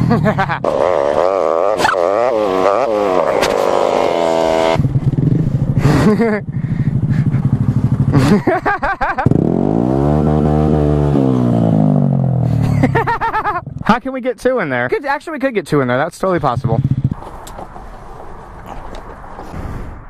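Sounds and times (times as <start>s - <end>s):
motorcycle engine revving: 0.0s - 13.9s, 16.4s - 17.5s.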